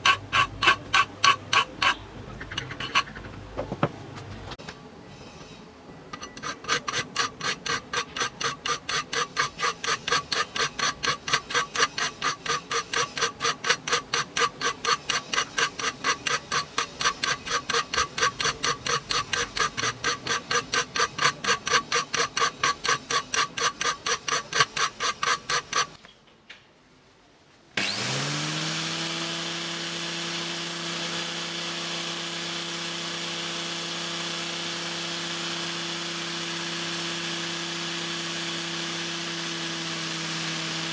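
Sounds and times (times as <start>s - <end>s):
hand tool scraping metal: 0.0s - 3.8s, 5.1s - 26.0s
small electric power tool running: 6.2s - 26.0s, 27.8s - 40.9s.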